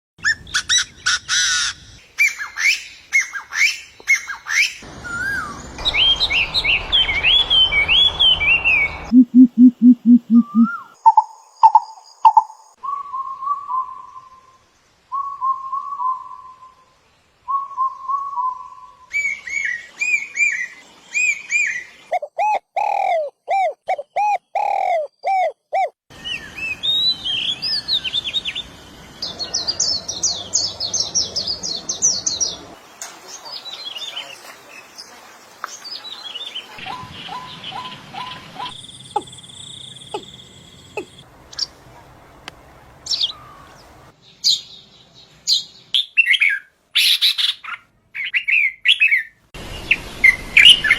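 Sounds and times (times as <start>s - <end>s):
bird chirps and trills: 0.2s - 14.4s, 36.4s - 41.8s, 43.1s - 50.9s
rapid low pulsing bird notes: 4.9s - 12.4s, 36.8s - 41.7s
bird repeating mid-pitched note: 9.1s - 10.8s.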